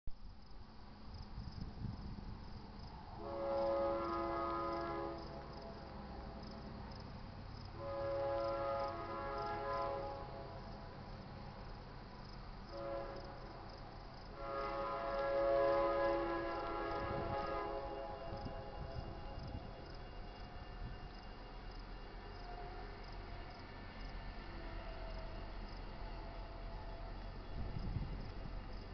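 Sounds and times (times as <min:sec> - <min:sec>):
locomotive air horn blasts: 0:03.2 - 0:05.8, 0:07.8 - 0:10.9, 0:12.7 - 0:13.6, 0:14.3 - 0:23.3.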